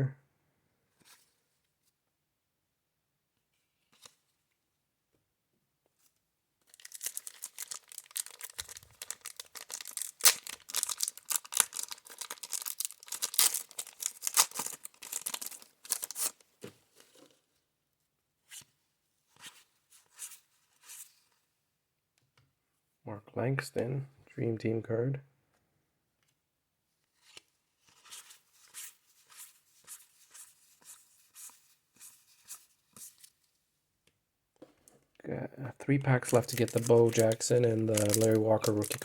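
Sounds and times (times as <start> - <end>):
wrapper tearing and crinkling: 6.7 - 16.4, 36.2 - 39.0.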